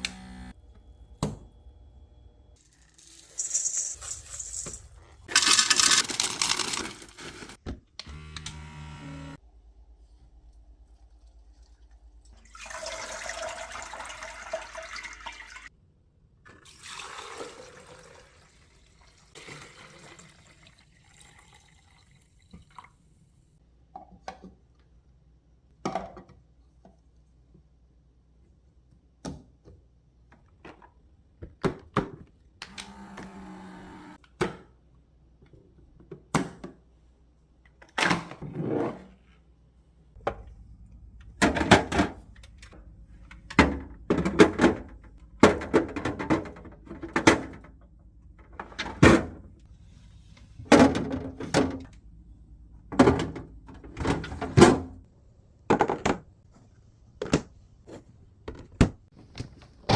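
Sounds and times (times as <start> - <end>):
containers and lids clunking: 43.3 - 47.8, 52.9 - 55.0.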